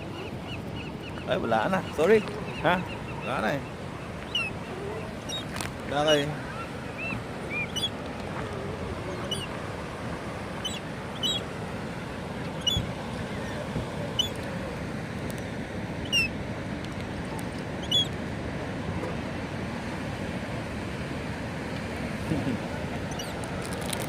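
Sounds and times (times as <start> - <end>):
small bird chirping: 23.1 - 23.4.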